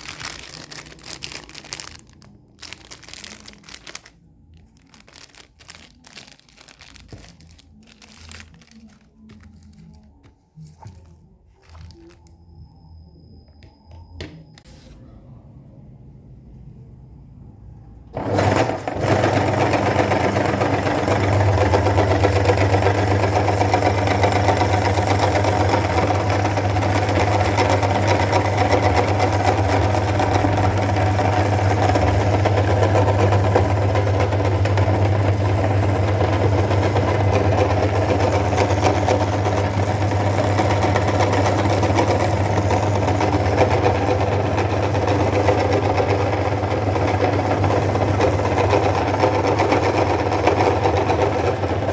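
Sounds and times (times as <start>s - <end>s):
electric meat grinder running: 18.2s - 51.9s.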